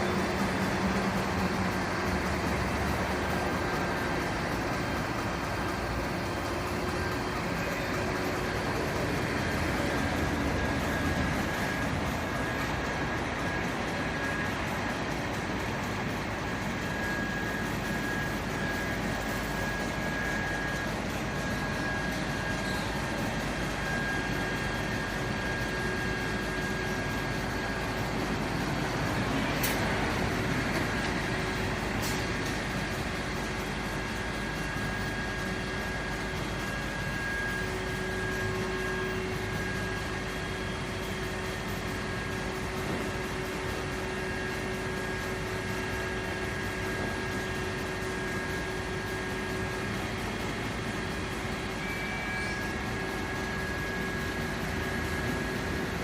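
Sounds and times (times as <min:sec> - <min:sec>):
vehicle engine and traffic noise: 0:00.0 - 0:16.1
faint steady high tone: 0:32.9 - 0:55.7.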